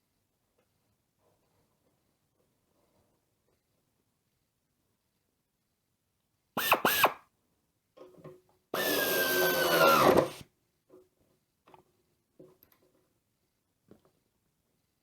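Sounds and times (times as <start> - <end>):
pneumatic tool air motor whine: 6.6 - 7.2, 8.8 - 10.4.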